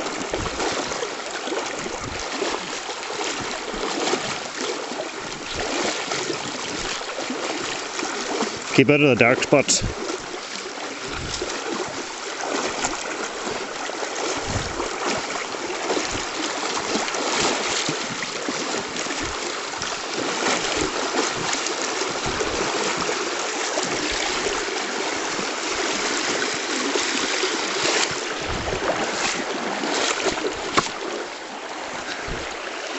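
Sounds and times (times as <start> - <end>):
river water rushing: 0.0 - 32.9.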